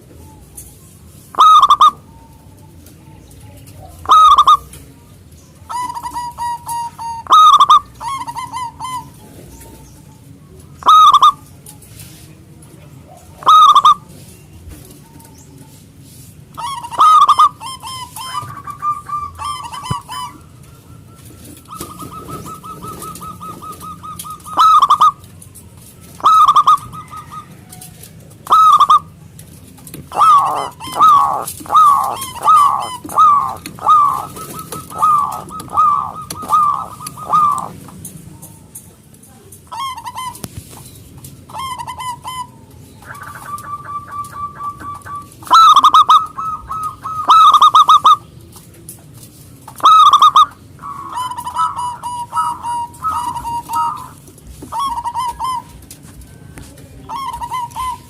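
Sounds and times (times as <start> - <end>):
dove cooing: 0.0 - 2.8, 3.7 - 4.9, 5.7 - 10.0, 10.8 - 11.7, 13.0 - 14.2, 16.6 - 29.3, 29.9 - 38.8, 41.5 - 48.3, 49.7 - 58.0
soft rapid bird trill: 30.1 - 37.8.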